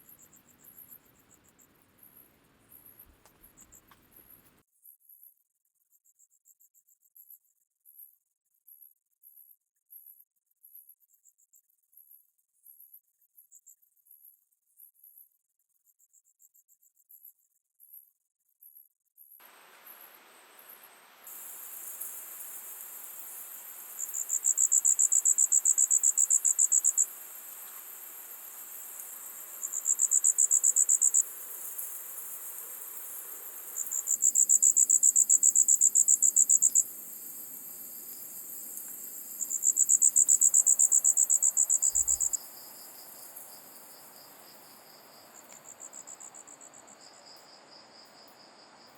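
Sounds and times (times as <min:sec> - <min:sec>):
insect chorus: 0:00.0 - 0:04.6, 0:19.4 - 0:48.9
pulsed insect trill: 0:19.8 - 0:47.3.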